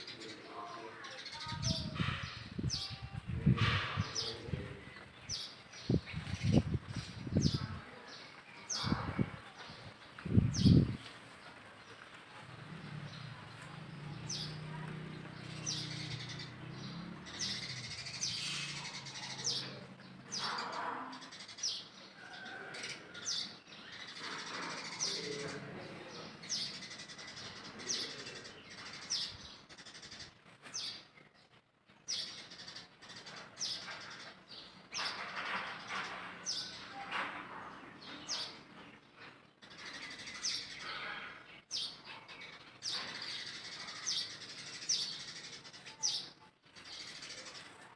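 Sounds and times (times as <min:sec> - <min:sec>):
bird calls: 0:00.0 - 0:31.2.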